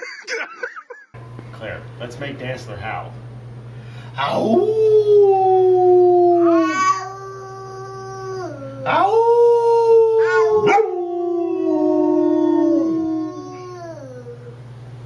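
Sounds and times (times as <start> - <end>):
dog howling: 4.3 - 14.6.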